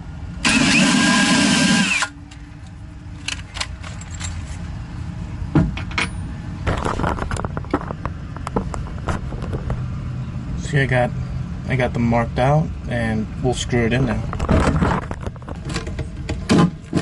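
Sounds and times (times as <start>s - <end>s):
loud burst of noise: 0.4s - 2.2s
metal hardware clicks and clinks: 3.2s - 4.6s.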